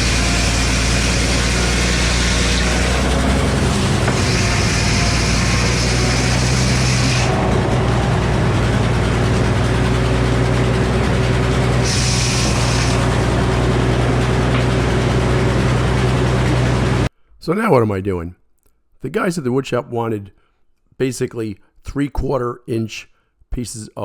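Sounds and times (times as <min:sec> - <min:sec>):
loud hiss: 0:00.0 - 0:07.4, 0:11.7 - 0:13.3
sawmill power unit running: 0:00.0 - 0:17.1.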